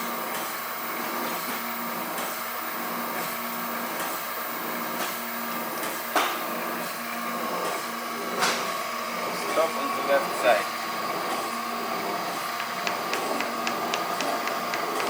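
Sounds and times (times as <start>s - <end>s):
surface grinder humming: 11.0s - 15.0s.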